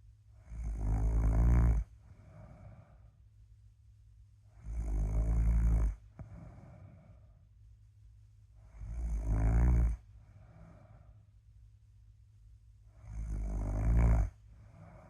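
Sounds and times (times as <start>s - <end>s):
person snoring: 0.4s - 3.0s, 4.6s - 7.2s, 8.7s - 11.0s, 13.0s - 15.0s.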